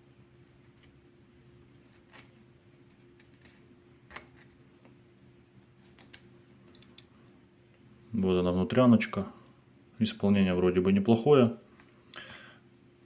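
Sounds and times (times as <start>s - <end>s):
faint steady hum: 0.0s - 13.0s
light clicks and taps of metal: 6.0s - 7.2s.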